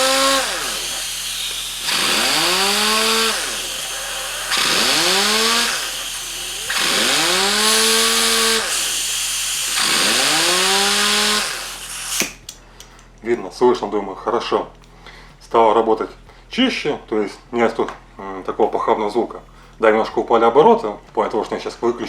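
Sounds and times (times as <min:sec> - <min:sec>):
air hiss: 0:00.0 - 0:12.5
pneumatic sander motor whine: 0:00.0 - 0:12.5.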